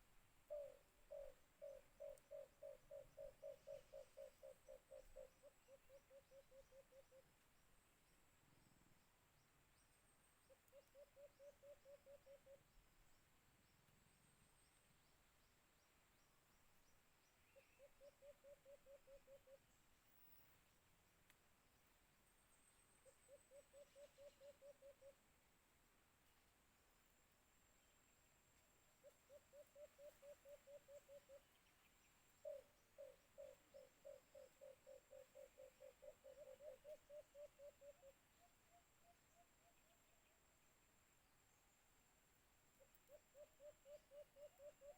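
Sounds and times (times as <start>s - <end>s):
dove hooting: 0.0s - 7.3s, 10.5s - 12.8s, 17.5s - 19.8s, 23.0s - 25.2s, 29.0s - 31.7s, 32.4s - 38.3s, 42.8s - 44.9s.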